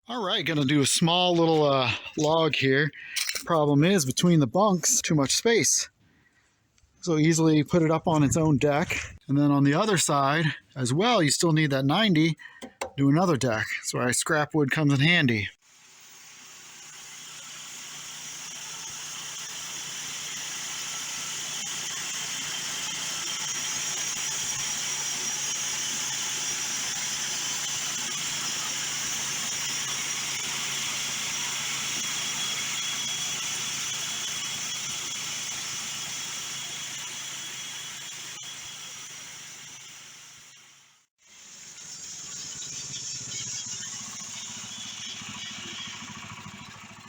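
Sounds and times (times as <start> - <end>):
gas engine humming: 0.1 - 5.8, 7.0 - 15.5, 41.8 - 47.0
saw blade cutting log: 15.8 - 40.6, 41.3 - 47.0.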